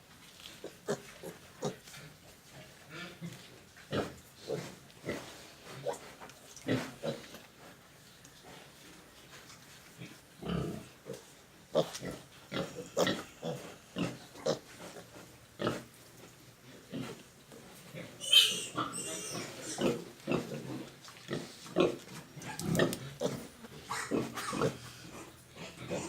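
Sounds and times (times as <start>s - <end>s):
pigs grunting: 10.4s - 11.0s, 11.7s - 15.9s, 17.9s - 26.0s
pig squealing: 18.2s - 20.0s, 22.4s - 26.0s.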